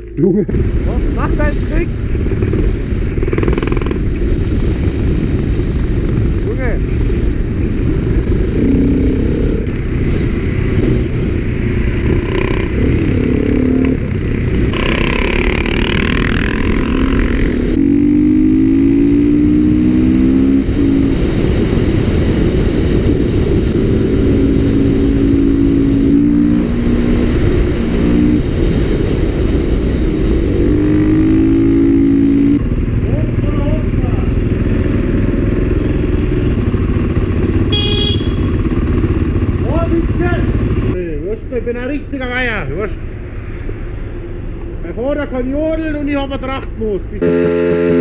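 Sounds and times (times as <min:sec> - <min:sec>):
motorcycle engine running: 0:00.0 - 0:26.3, 0:30.5 - 0:41.0.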